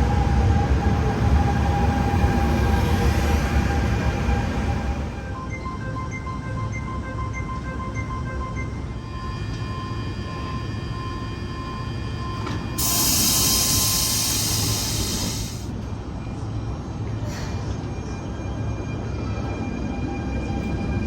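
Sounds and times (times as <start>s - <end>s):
electric train rumble: 0.0s - 7.3s, 8.0s - 17.2s
compressed-air hiss: 12.8s - 15.7s.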